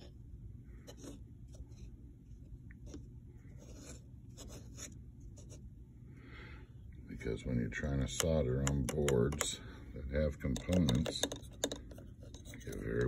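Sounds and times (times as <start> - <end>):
scratchy scrapes: 2.8 - 5.6.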